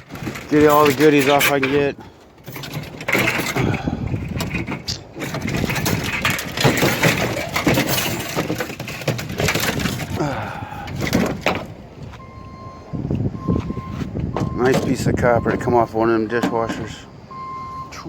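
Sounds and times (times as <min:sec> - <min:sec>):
metal clanking and scraping: 0:00.0 - 0:12.2.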